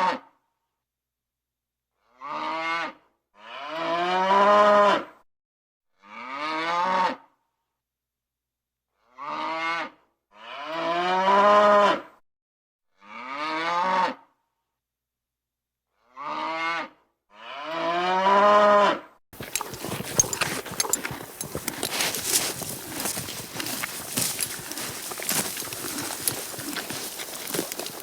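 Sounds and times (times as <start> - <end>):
cow mooing: 19.4 - 28.0.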